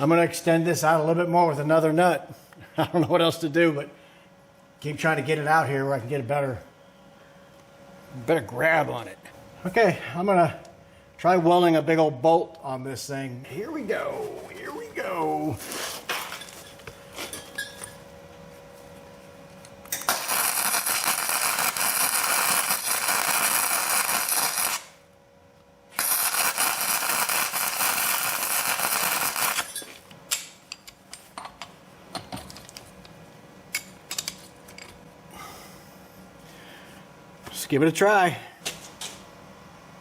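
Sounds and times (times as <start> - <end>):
arc welding crackle: 19.8 - 25.1, 25.9 - 30.5.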